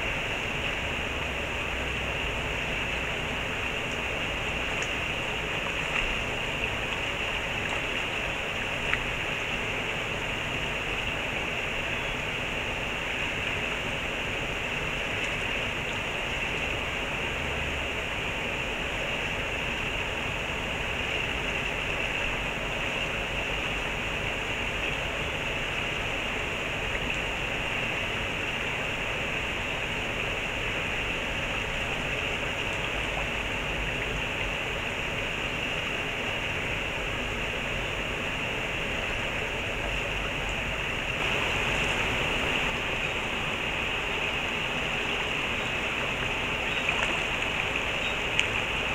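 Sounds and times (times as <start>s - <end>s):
stream water running: 0.0s - 48.9s.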